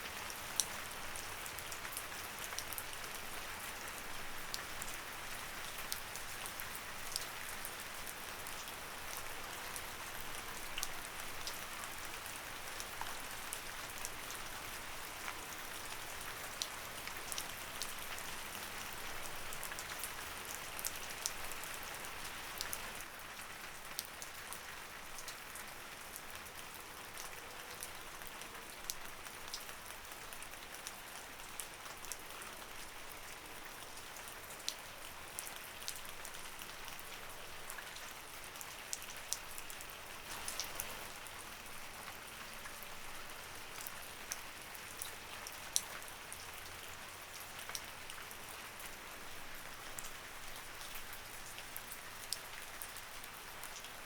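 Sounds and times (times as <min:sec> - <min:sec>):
raindrops ticking on surface: 0:00.2 - 0:54.0.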